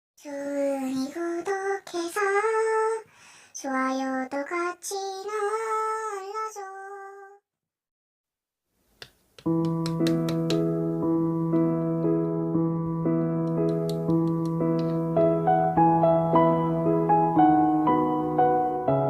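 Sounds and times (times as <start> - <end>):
child singing: 0.2 - 7.4
piano music: 9.4 - 19.0.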